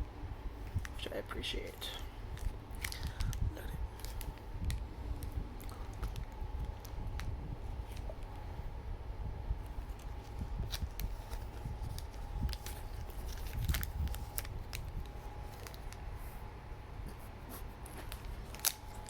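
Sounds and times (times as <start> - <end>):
faint steady hum: 0.0 - 19.0
small clicks and rubbing noises: 9.6 - 16.0, 17.8 - 19.0.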